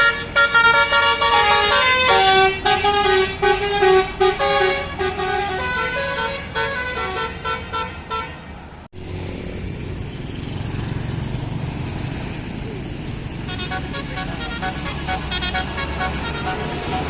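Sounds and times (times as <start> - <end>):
multi-note bus horn tune: 0.0 - 8.6, 13.4 - 17.0
low vehicle rumble: 0.0 - 17.0.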